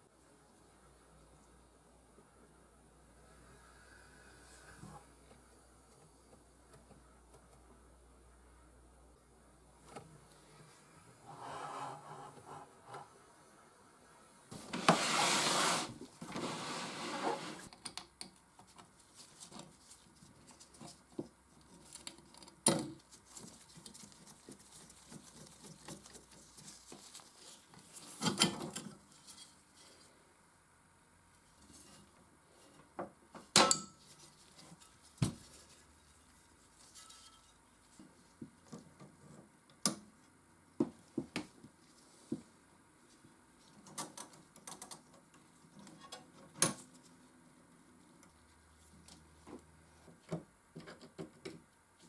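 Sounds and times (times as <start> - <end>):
metal rubbing noise: 11.2 - 13.1.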